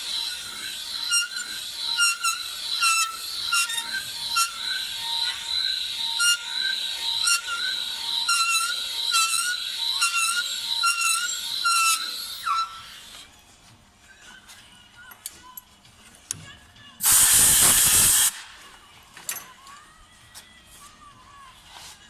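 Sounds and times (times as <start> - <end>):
valve seat cutter scraping and squealing: 0.0 - 13.3, 17.0 - 18.4.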